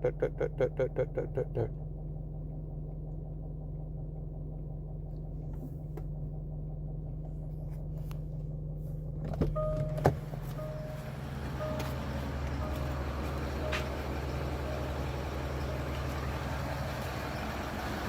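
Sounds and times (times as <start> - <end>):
diesel engine idling: 0.0 - 18.0.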